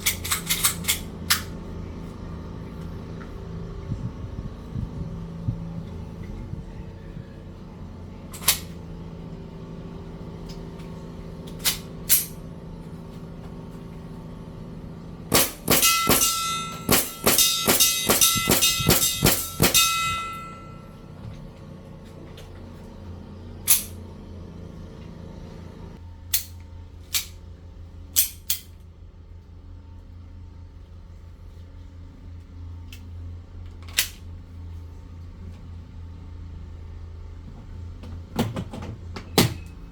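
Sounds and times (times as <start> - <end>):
low hum: 0.0 - 38.3
airsoft gun shots: 15.3 - 20.3
metallic clang on target: 15.3 - 21.1.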